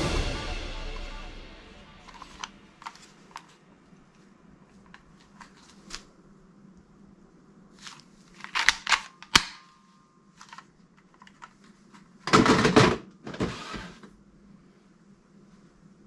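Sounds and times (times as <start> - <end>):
plastic toy guns clicking: 8.4 - 9.7.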